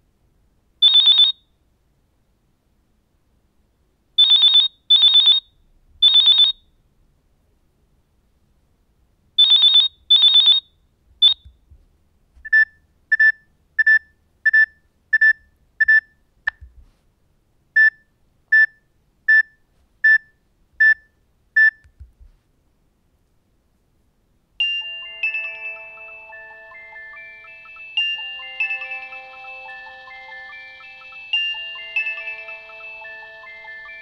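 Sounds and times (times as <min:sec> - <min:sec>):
chiming melodic ringtone: 0:24.6 - 0:34.0.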